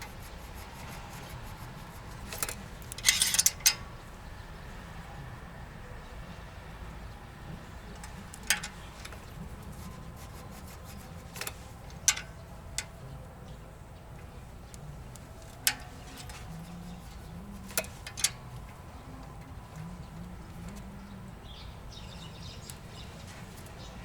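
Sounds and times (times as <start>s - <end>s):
sharp clicks and knocks: 0.0s - 3.9s.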